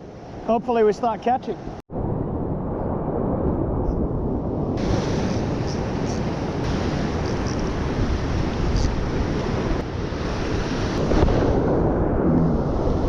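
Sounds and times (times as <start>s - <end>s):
wind on microphone: 1.9s - 13.0s.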